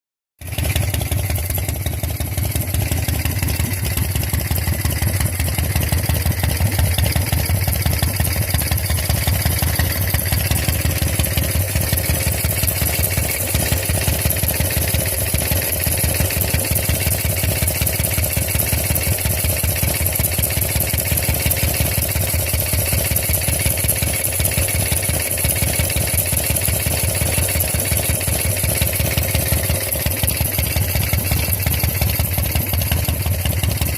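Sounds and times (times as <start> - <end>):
motorcycle engine idling: 0.4 - 33.9.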